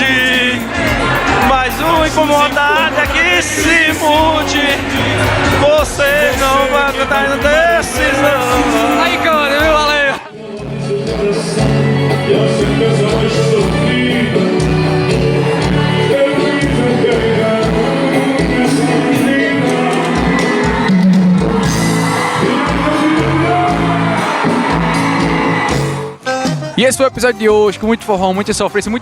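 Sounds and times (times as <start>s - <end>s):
singing over a steady beat: 0.0s - 26.1s.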